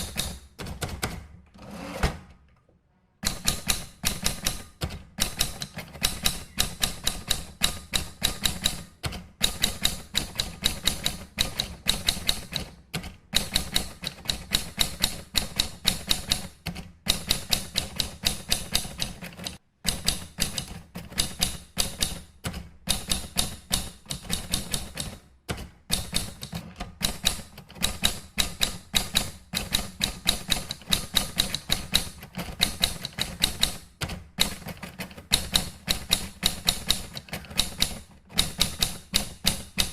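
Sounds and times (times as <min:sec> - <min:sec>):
keyboard typing clicks: 0:16.7 - 0:39.9.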